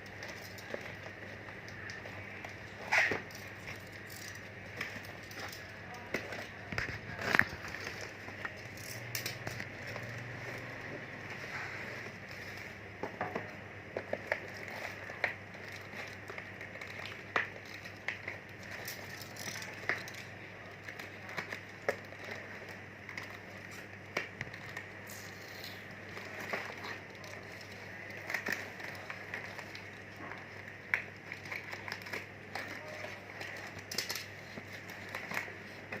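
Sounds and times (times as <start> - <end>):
packaging clicking and crackling: 0.0 - 36.0.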